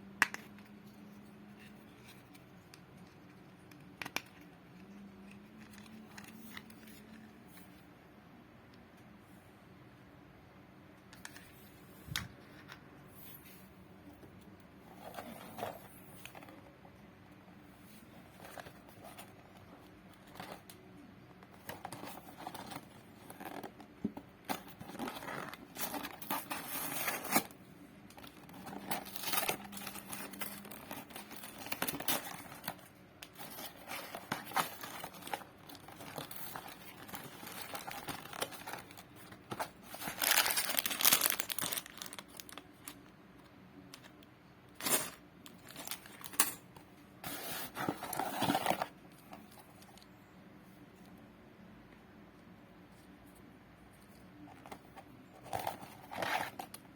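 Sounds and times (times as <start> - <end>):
packaging crinkling and tearing: 24.4 - 43.1, 44.8 - 46.4.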